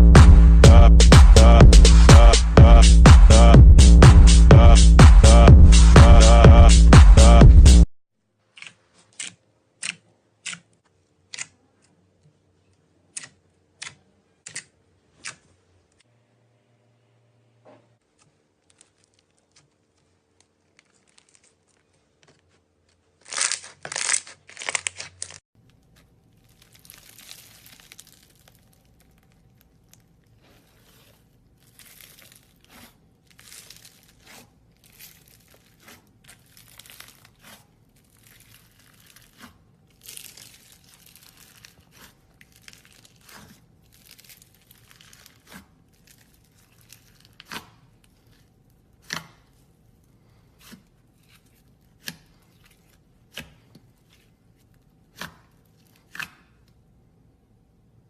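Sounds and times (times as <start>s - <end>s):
slime crinkling and crackling: 18.1s - 56.8s.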